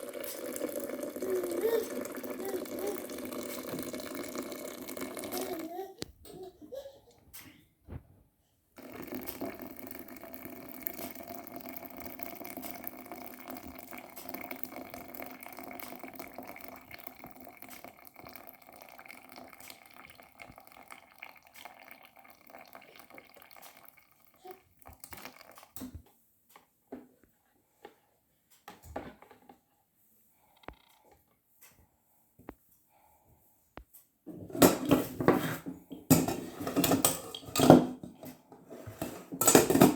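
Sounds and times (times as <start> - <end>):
water running: 0.0 - 5.9, 8.8 - 25.9, 34.5 - 38.1.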